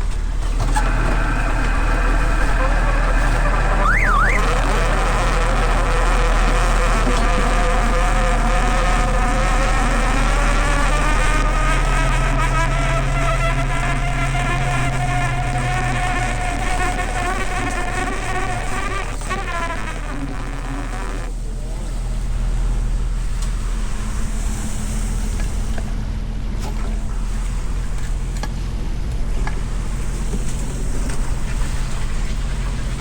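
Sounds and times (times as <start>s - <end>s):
low hum: 0.0s - 23.2s
boat motor whining: 0.0s - 33.0s.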